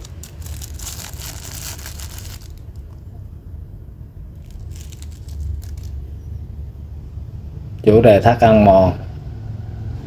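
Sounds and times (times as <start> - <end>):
packaging rustling and clicking: 0.0 - 3.0, 4.4 - 6.0
steady low hum: 0.0 - 10.0.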